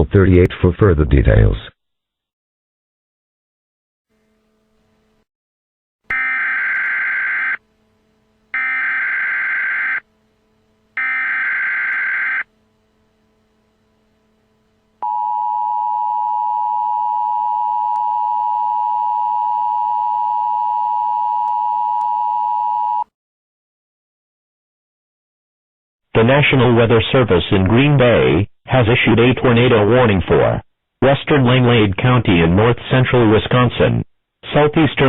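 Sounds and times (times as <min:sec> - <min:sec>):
two-tone alert signal: 0:06.1 - 0:07.6
screeching digital data bursts: 0:08.6 - 0:10.0, 0:11.0 - 0:12.5.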